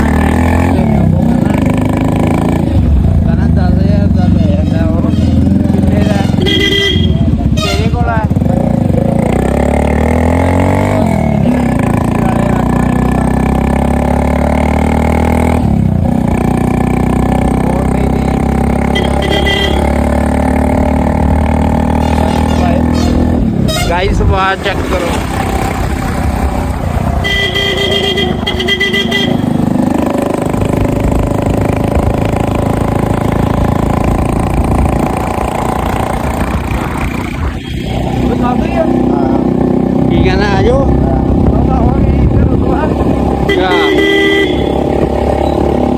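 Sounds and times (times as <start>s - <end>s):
vehicle engine running: 0.0s - 45.9s.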